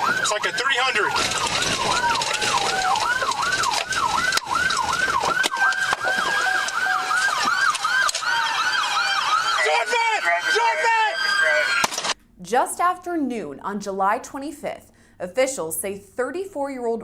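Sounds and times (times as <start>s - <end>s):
police siren yelping: 0.0s - 12.1s
siren wailing: 0.0s - 12.1s.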